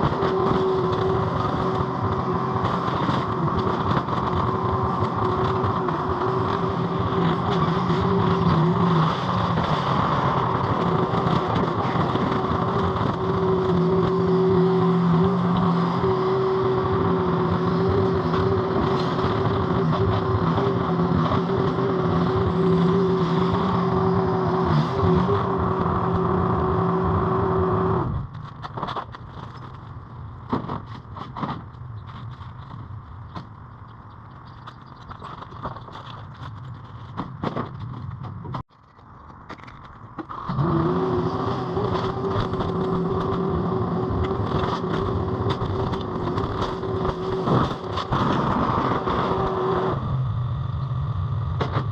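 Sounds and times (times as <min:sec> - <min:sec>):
skid steer engine whining: 0:00.0 - 0:28.8, 0:40.2 - 0:51.9.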